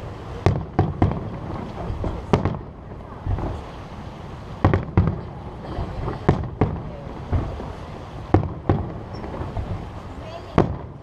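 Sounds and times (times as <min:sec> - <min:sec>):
fireworks bangs: 0:00.0 - 0:11.0
steady low rumble: 0:00.0 - 0:11.0.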